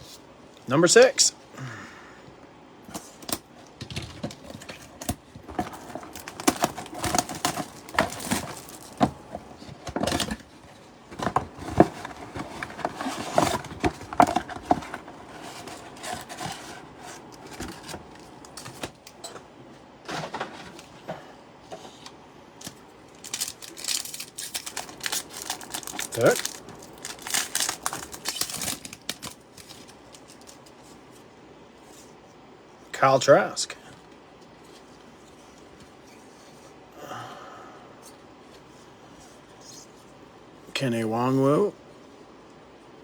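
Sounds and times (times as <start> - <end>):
card wrappers rustling and crinkling: 2.9 - 19.2, 21.7 - 31.2.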